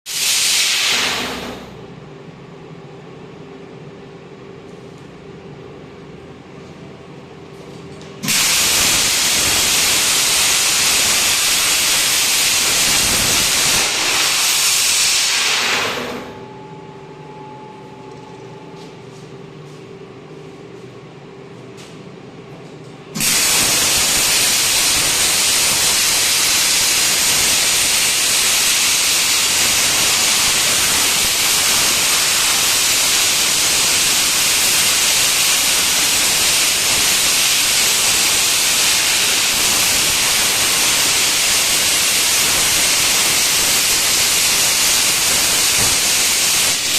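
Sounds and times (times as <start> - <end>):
plasma cutter torch hissing: 0.1 - 1.8, 8.2 - 16.4, 23.2 - 46.9
machine hum with faint whine: 0.9 - 46.9.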